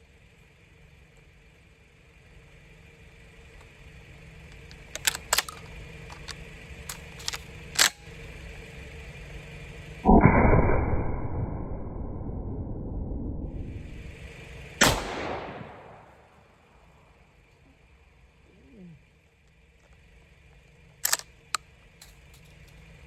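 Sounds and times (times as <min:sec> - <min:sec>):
sharp clicks: 0:04.5 - 0:08.4, 0:21.0 - 0:21.7
shotgun blast: 0:13.5 - 0:16.4.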